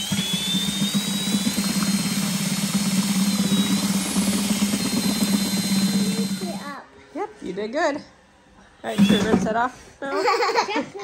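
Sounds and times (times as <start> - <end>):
electric mixer whirring: 0.0 - 6.8, 8.9 - 9.5.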